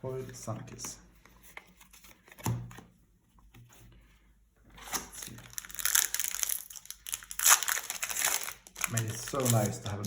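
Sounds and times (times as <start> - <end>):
plastic wrapper crinkling: 5.1 - 10.0.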